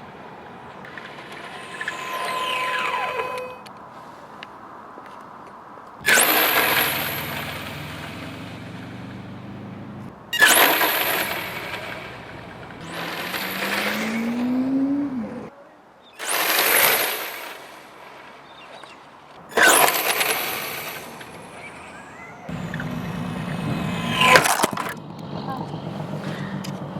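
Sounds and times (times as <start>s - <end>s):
rc car motor and tyre bursts: 0.0s - 3.8s, 6.0s - 15.5s, 16.2s - 26.9s
rising motor whine: 0.6s - 3.7s, 6.0s - 15.5s, 19.6s - 26.9s.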